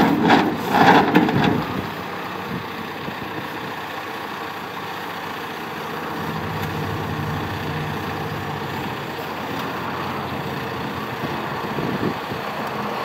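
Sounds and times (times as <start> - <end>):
diesel engine idling: 0.1 - 13.0.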